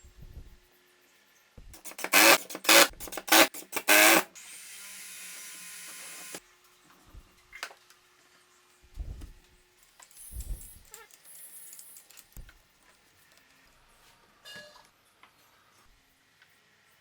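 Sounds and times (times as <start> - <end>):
small electric motor bursts: 1.8 - 6.4.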